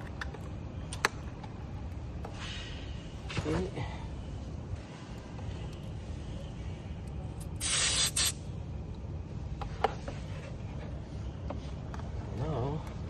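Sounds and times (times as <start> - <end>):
air hissing: 7.4 - 8.5.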